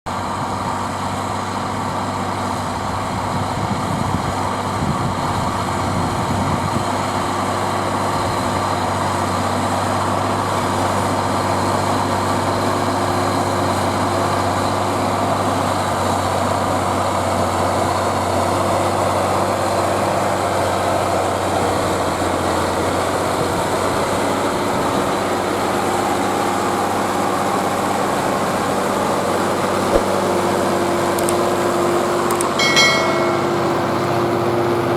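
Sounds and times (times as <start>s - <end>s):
tractor diesel engine under load: 0.1s - 34.9s.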